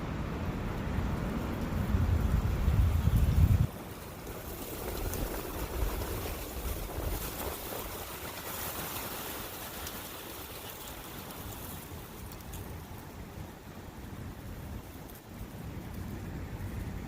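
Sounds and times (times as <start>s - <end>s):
wind through trees: 0.0s - 17.0s
running brook: 3.7s - 17.0s.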